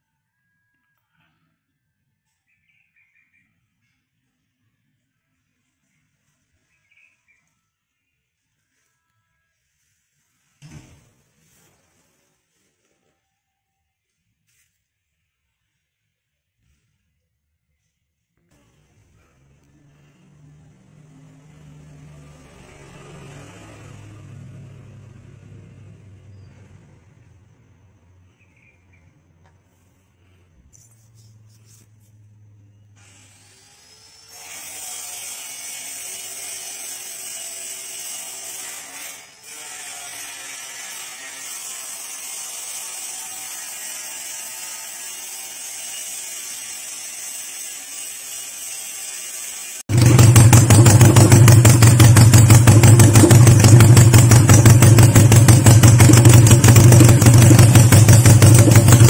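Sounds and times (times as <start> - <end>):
motorcycle engine running: 49.9 - 59.0.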